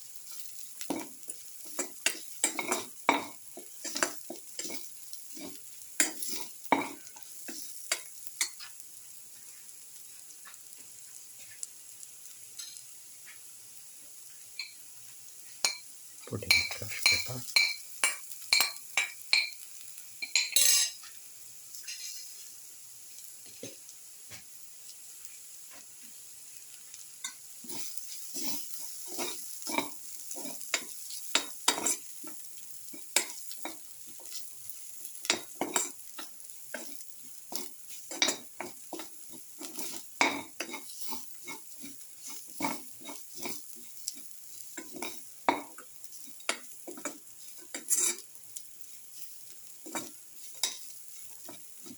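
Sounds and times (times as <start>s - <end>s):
food sizzling in oil: 0.0s - 51.9s
spoon stirring and scraping: 0.3s - 11.7s, 12.6s - 13.4s, 16.4s - 22.4s, 27.0s - 51.9s
spoon knocking against pan: 0.8s - 4.8s, 5.5s - 8.7s, 44.8s - 45.9s.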